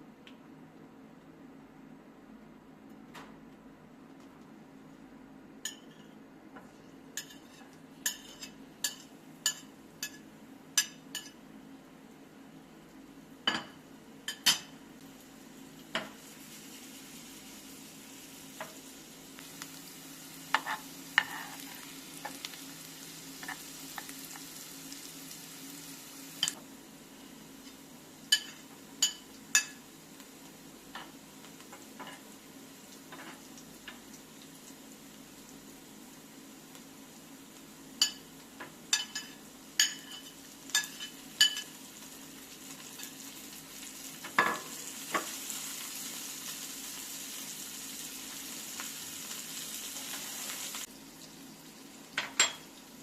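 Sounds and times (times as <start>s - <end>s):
soft sizzling: 14.3s - 53.0s.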